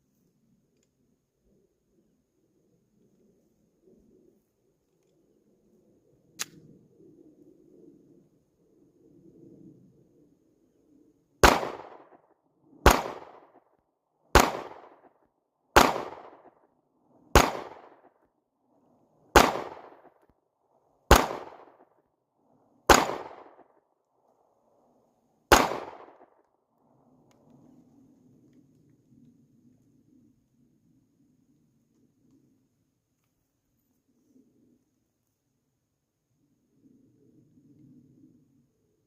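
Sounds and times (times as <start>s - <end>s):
pistol shots with echo: 11.4s - 12.2s, 12.8s - 13.6s, 14.3s - 15.1s, 15.8s - 16.5s, 17.3s - 18.1s, 19.3s - 20.1s, 21.1s - 21.8s, 22.9s - 23.7s, 25.5s - 26.3s.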